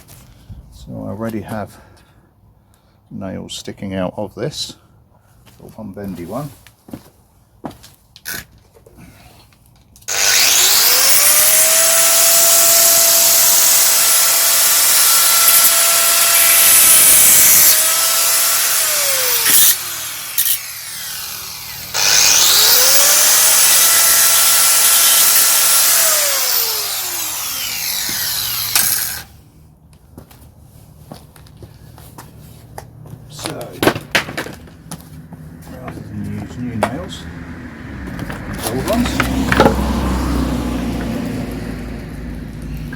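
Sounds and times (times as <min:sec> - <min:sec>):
electric saw cutting wood: 0:10.1 - 0:29.4, 0:35.8 - 0:42.9.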